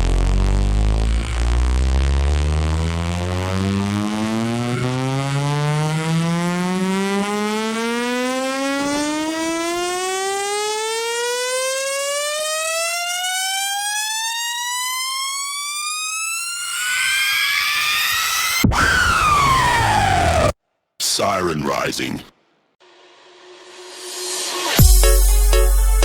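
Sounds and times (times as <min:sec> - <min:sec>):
rising siren-like synth tone: 0:00.0 - 0:20.6.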